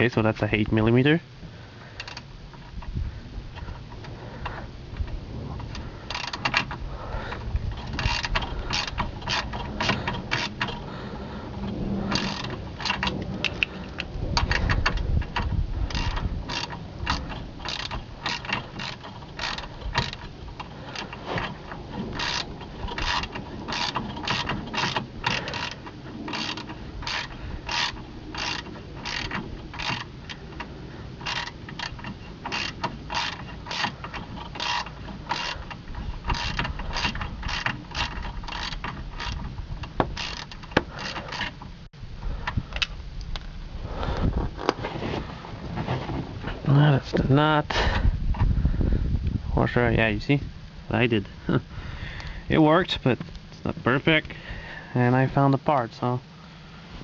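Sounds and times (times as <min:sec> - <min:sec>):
ratchet wrench clicking: 0:07.8 - 0:10.9, 0:12.1 - 0:21.2, 0:22.0 - 0:41.6.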